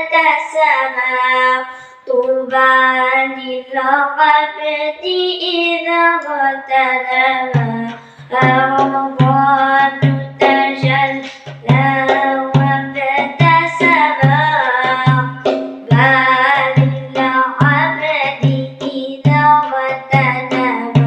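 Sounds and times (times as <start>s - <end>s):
vocal melody: 0.6s - 21.0s
steady low drum beat: 7.6s - 21.0s.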